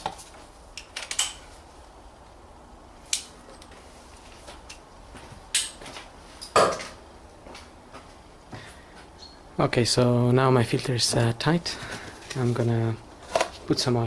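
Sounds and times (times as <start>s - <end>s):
tools and parts clinking: 0.8s - 1.4s, 3.1s - 3.8s.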